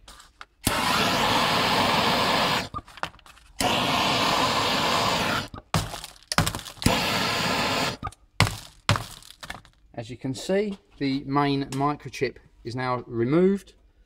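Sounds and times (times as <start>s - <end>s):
hot-air station blowing: 0.6s - 2.8s, 3.6s - 5.6s, 6.8s - 8.0s.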